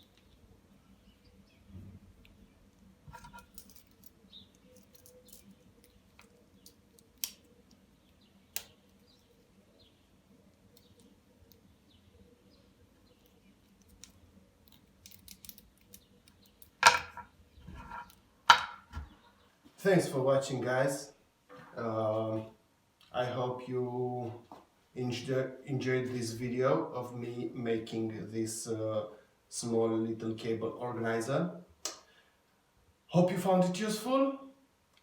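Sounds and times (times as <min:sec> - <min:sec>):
tools clattering: 0:03.1 - 0:04.1, 0:16.8 - 0:19.1.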